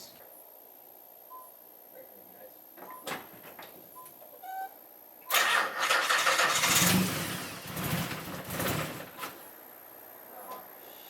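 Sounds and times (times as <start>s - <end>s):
car engine misfiring: 5.3s - 9.3s.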